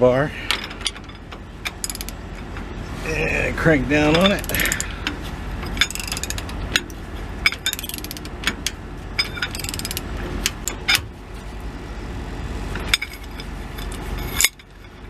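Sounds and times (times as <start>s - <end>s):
ratchet wrench pawl clicks: 5.8s - 6.5s, 7.6s - 8.3s, 9.3s - 10.0s.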